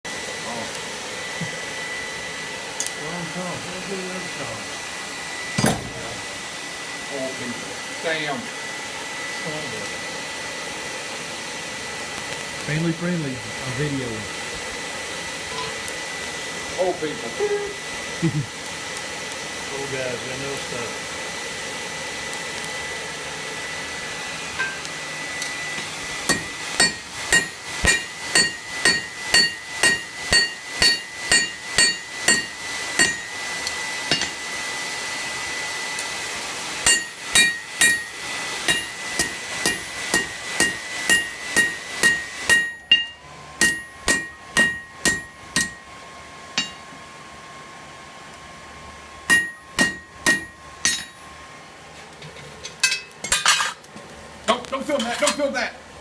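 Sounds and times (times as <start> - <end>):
forge blower rushing air: 0.1 - 52.8, 53.8 - 56.0
hammer striking anvil: 5.6 - 6.0, 26.3 - 33.3, 34.1 - 34.4, 36.8 - 38.1, 38.7 - 45.8, 46.6 - 46.8, 49.3 - 51.2.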